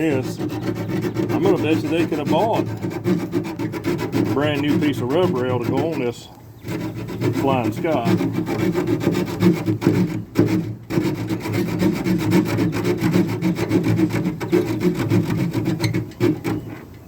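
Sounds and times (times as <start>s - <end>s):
saw cutting aluminum: 0.0s - 16.9s.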